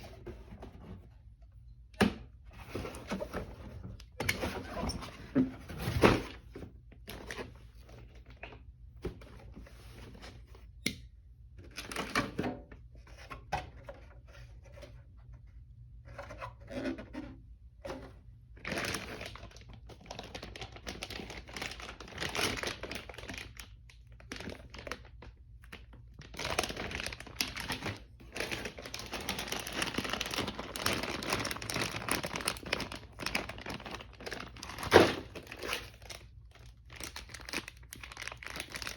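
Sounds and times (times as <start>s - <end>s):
plastic and paper crinkling: 18.6s - 38.9s.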